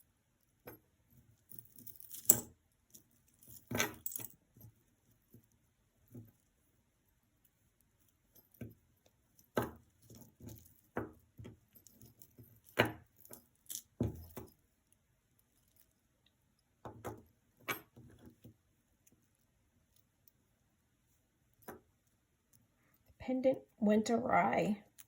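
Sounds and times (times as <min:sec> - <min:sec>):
jewelry clinking and jingling: 0:00.0 - 0:18.4.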